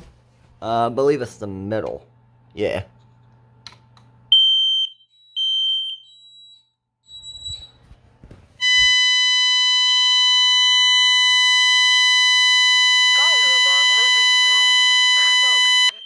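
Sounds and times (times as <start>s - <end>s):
shrill fire alarm tone: 4.3s - 7.9s, 8.6s - 16.0s.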